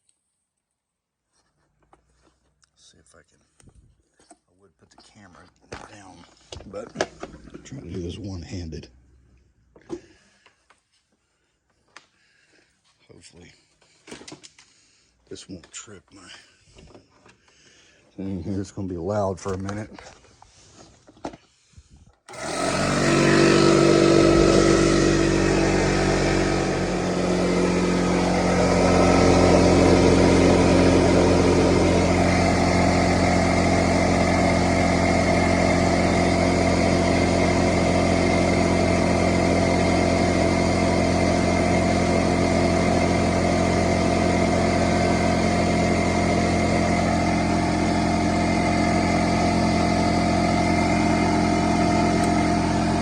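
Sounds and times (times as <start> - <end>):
air compressor running: 22.3 - 53.0.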